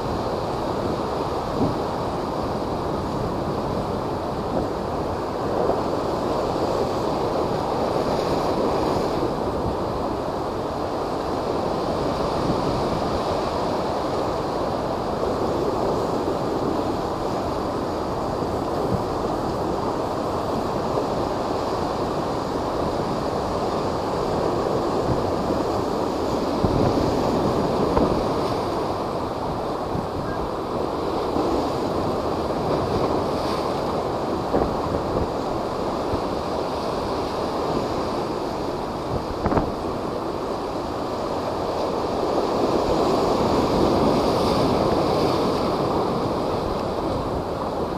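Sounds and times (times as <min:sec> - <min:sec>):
heavy surf: 0:00.0 - 0:47.9
wind buffeting microphone: 0:11.4 - 0:41.4.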